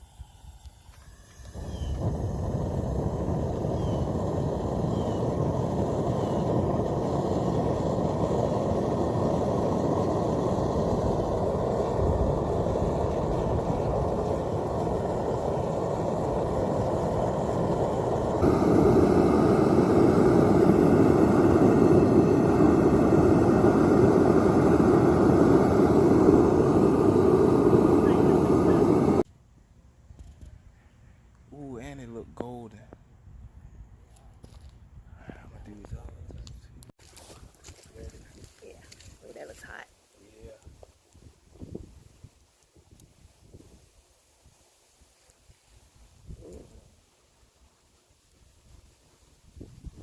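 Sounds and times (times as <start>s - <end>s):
furnace burner roaring: 0.0s - 29.3s.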